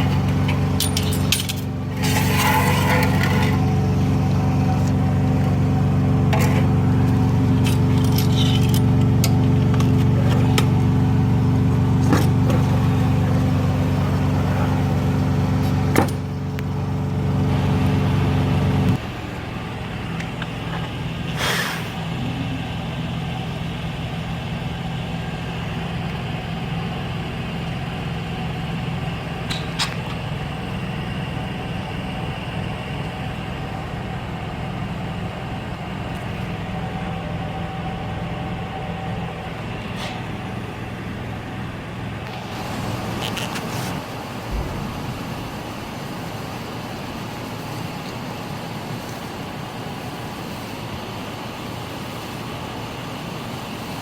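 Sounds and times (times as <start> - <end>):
car engine humming: 0.0 - 49.1
short hiss: 21.4 - 22.0.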